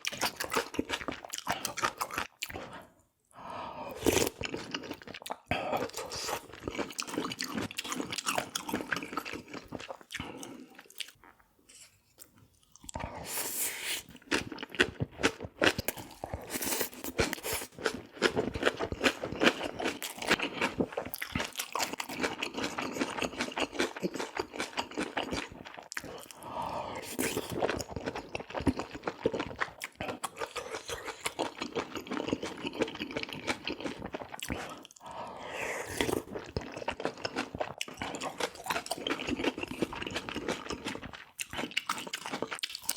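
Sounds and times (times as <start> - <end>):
person chewing and crunching food: 0.0 - 42.9.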